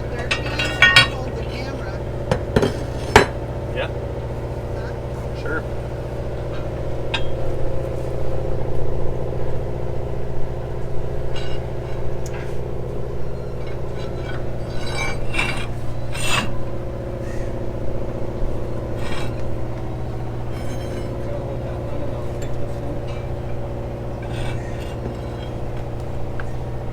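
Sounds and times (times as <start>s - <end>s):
engine drone: 0.0s - 26.9s
metallic tool clinks and scrapes: 0.2s - 1.3s, 13.6s - 16.6s, 19.0s - 19.5s, 20.4s - 21.3s, 24.2s - 25.8s.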